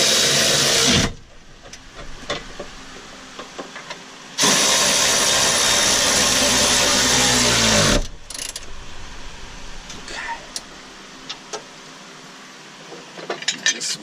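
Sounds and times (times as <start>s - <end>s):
power tool driving a bolt: 0.0s - 1.2s, 4.4s - 8.6s.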